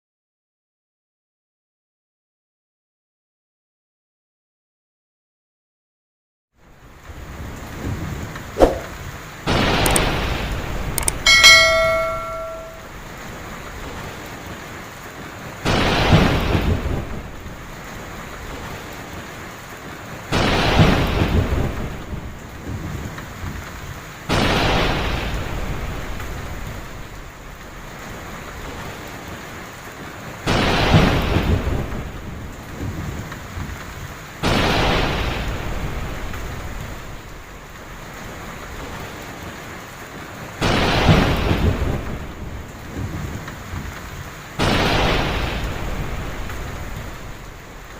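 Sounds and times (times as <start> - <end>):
heavy rain falling: 6.6 - 12.2, 12.8 - 47.9
thunder cracking and rumbling: 15.6 - 18.8, 20.3 - 27.2, 30.5 - 37.3, 40.6 - 47.7.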